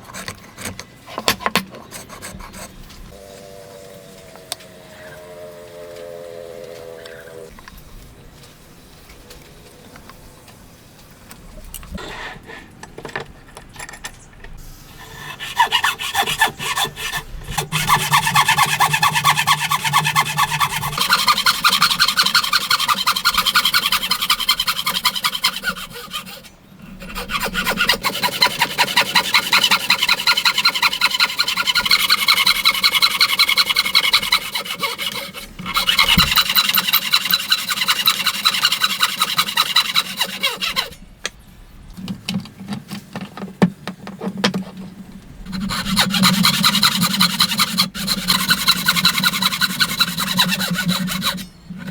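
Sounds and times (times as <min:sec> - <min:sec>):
hand saw cutting wood: 0:15.0 - 0:41.0, 0:45.5 - 0:51.9.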